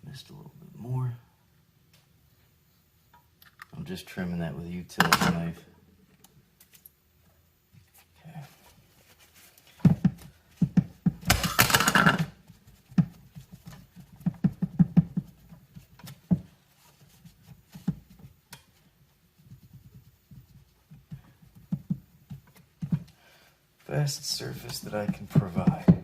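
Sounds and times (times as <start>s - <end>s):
handling clicks and knocks: 5.0s - 5.6s, 9.8s - 16.5s, 24.6s - 26.0s.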